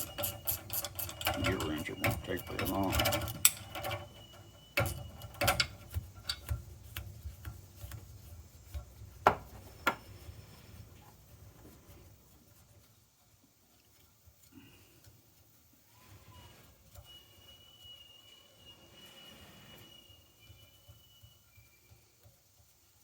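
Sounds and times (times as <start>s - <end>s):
light metal taps and clinks: 0.0s - 8.0s.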